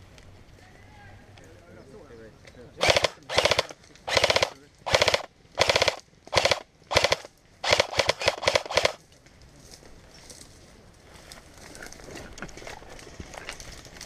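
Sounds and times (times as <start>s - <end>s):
airsoft rifle firing bursts: 2.8s - 9.0s.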